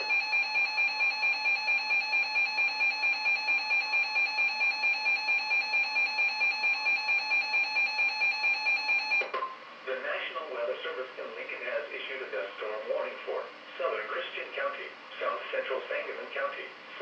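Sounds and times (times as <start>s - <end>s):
pulsing electronic alarm beep: 0.0s - 9.2s.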